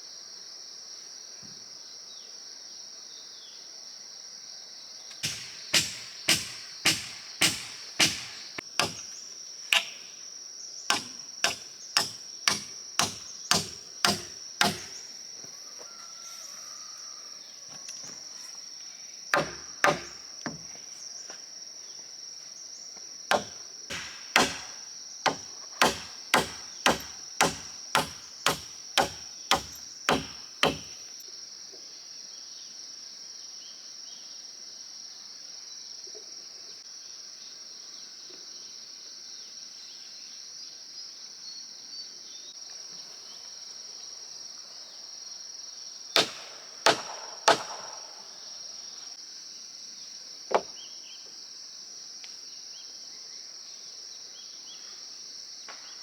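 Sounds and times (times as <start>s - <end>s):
insects buzzing: 0.0s - 56.0s
hand tool striking wood: 5.2s - 9.1s, 9.7s - 10.1s, 10.9s - 15.0s, 19.4s - 20.8s, 23.3s - 31.0s, 46.2s - 47.9s.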